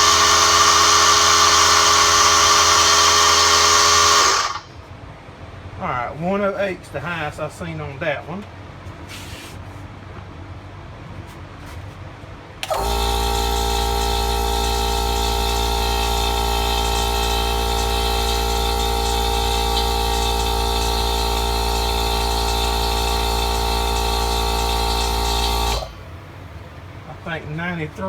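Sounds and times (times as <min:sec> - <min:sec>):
air compressor motor humming: 0:00.0 - 0:04.8, 0:12.6 - 0:27.2.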